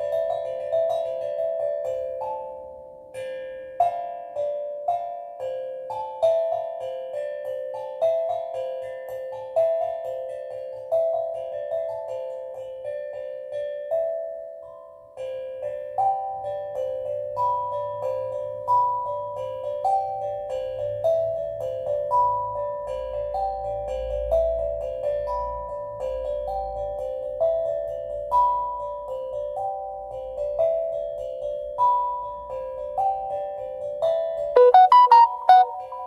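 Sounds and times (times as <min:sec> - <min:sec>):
steel drum melody: 0:34.6 - 0:36.0.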